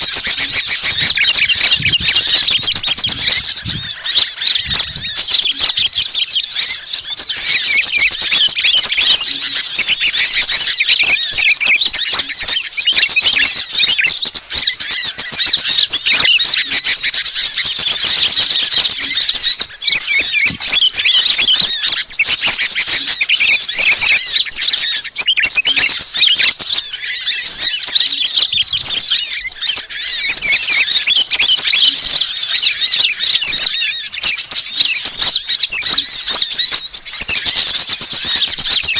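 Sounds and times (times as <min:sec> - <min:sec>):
songbirds twittering and chirping: 0:00.0 - 0:38.9.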